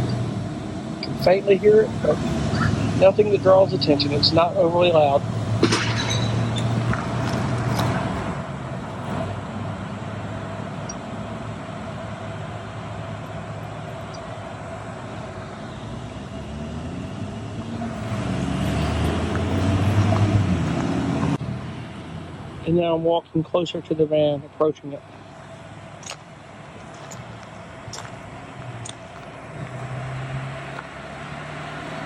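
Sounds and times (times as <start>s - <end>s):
vehicles passing: 0.0s - 32.0s.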